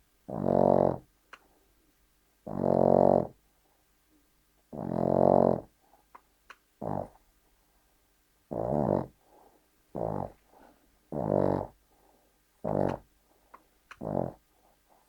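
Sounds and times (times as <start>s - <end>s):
dog snoring: 0.3s - 1.1s, 2.4s - 3.4s, 4.7s - 5.8s, 6.8s - 7.2s, 8.5s - 9.3s, 9.9s - 11.8s, 12.6s - 13.1s, 13.9s - 14.6s.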